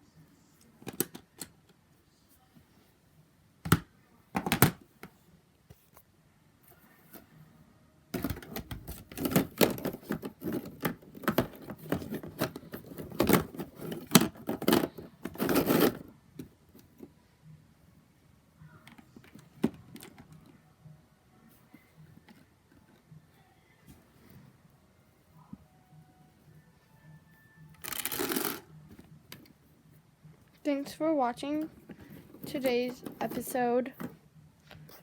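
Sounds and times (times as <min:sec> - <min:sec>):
toys clattering in a bin: 0:08.2 - 0:16.1.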